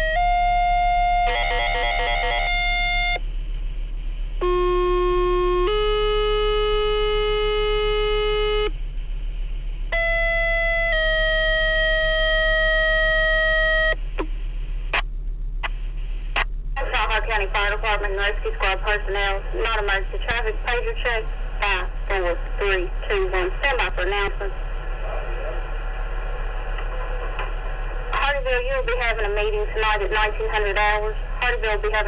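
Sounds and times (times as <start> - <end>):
radio clicks: 13.9 - 16.6, 26.7 - 27.8.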